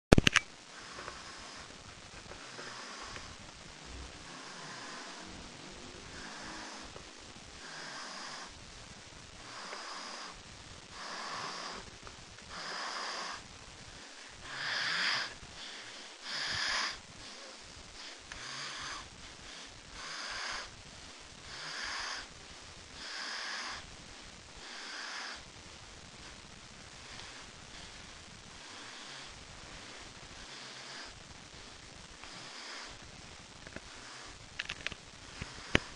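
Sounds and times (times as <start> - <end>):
person snoring: 2.4 - 8.6, 9.4 - 11.9, 12.5 - 20.8, 21.4 - 23.9, 24.6 - 25.5, 35.3 - 35.9.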